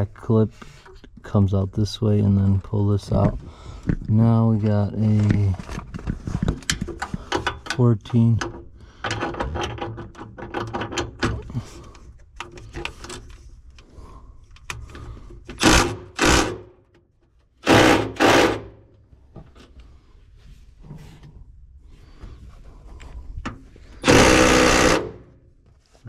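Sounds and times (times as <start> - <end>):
power tool motor bursts: 15.6 - 16.7, 17.6 - 18.8, 24.0 - 25.3
ratchet clicking: 24.0 - 25.2.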